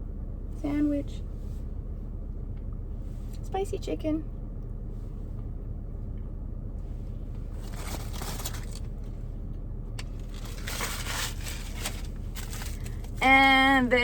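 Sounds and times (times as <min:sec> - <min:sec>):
paper wrappers crinkling: 0:07.5 - 0:09.1, 0:10.0 - 0:13.3.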